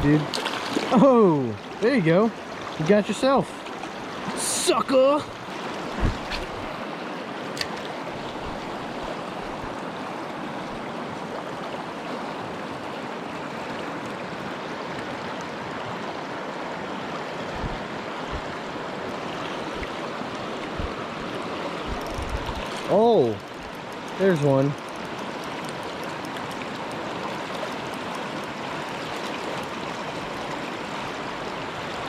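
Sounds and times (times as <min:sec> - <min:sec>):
river water rushing over rocks: 0:00.0 - 0:32.0.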